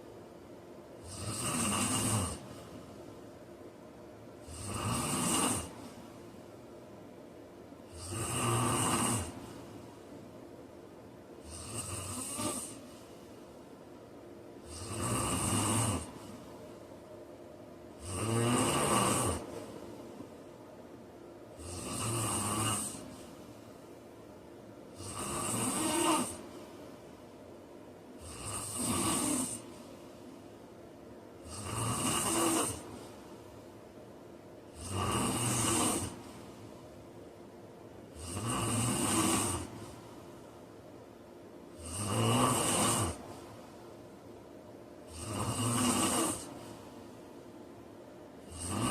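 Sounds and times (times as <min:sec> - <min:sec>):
man snoring: 0:01.0 - 0:02.6, 0:04.4 - 0:05.8, 0:07.8 - 0:09.5, 0:11.4 - 0:12.9, 0:14.6 - 0:16.4, 0:17.9 - 0:19.9, 0:21.5 - 0:23.3, 0:24.9 - 0:26.4, 0:28.2 - 0:29.8, 0:31.4 - 0:33.2, 0:34.7 - 0:36.6, 0:38.1 - 0:40.1, 0:41.7 - 0:43.5, 0:45.1 - 0:47.0, 0:48.4 - 0:48.9.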